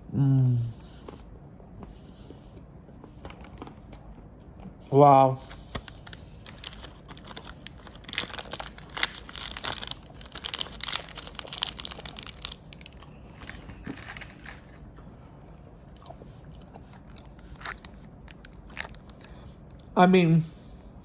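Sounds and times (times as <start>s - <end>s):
candy wrapper crinkling: 5.4s - 14.9s, 17.0s - 19.9s.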